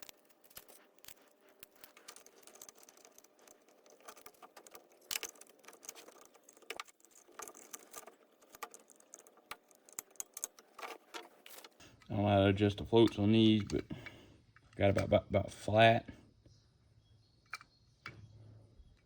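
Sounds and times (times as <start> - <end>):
small metal parts clicking: 0.0 - 11.8.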